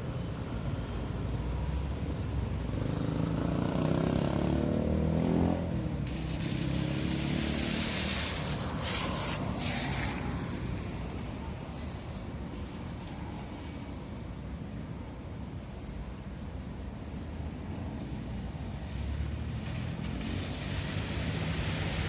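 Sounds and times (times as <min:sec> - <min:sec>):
hiss of passing traffic: 0:00.0 - 0:22.0
vehicle engine passing close: 0:02.6 - 0:11.0, 0:19.0 - 0:22.0.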